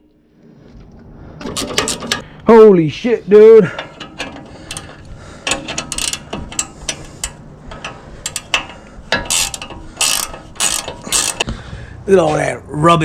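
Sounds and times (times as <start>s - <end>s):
ratchet wrench clicking: 1.5s - 2.2s, 3.8s - 11.5s.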